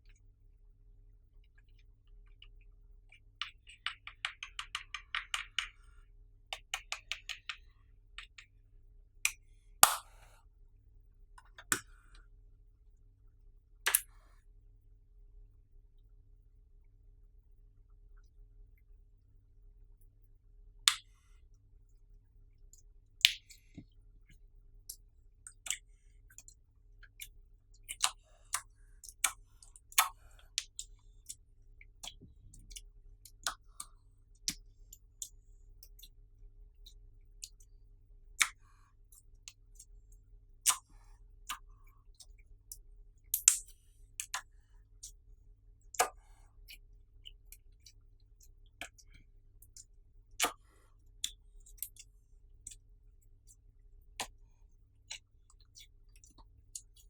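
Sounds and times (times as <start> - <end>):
slime popping and clicking: 9.8 - 10.1.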